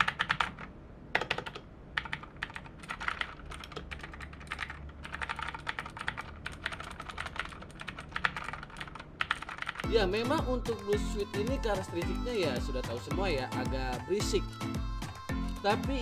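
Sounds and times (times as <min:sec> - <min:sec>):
typing on clicky keyboard: 0:00.0 - 0:09.9.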